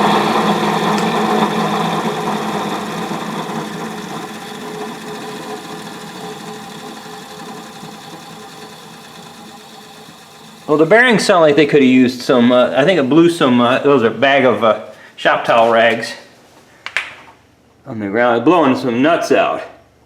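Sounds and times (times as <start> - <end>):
dry bearings: 0.0 - 12.0
lathe motor coasting down: 0.0 - 12.2.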